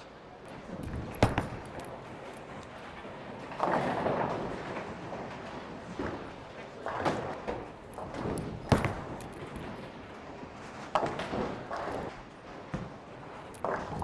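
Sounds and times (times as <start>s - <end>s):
bowling balls crashing into pins: 0.8s - 2.6s, 7.9s - 9.8s.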